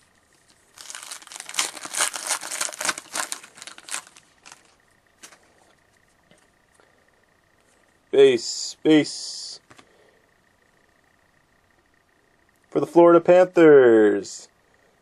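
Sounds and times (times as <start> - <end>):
foil wrapper crinkling and tearing: 0.4 - 5.4.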